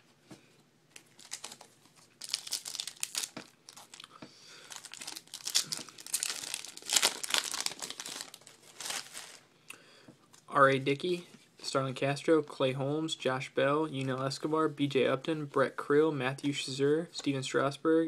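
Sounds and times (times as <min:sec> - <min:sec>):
wrapper tearing and crinkling: 0:01.0 - 0:09.4.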